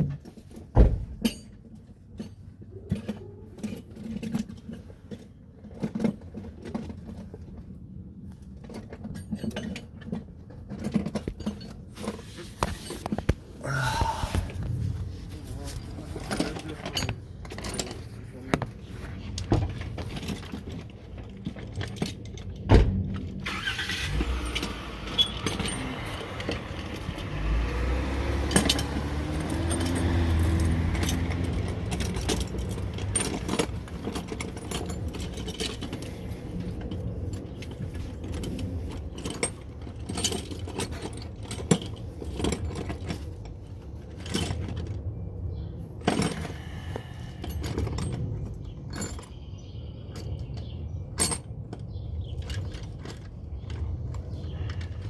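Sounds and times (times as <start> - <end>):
vehicle passing by: 23.5 - 34.0
metal hand tools clinking: 24.4 - 36.2.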